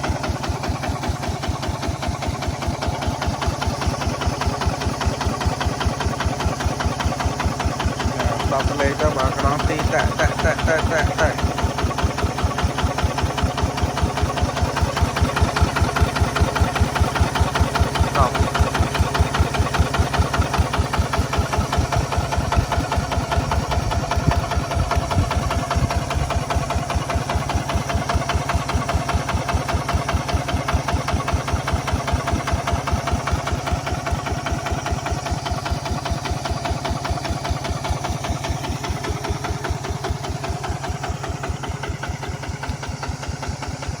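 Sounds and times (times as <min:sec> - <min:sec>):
diesel engine chugging: 0:00.0 - 0:44.0.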